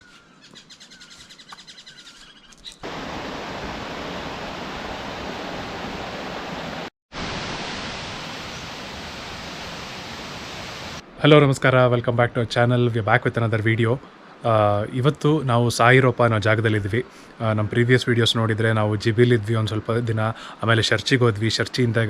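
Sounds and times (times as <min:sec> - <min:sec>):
waterfall rushing: 0:02.8 - 0:11.0.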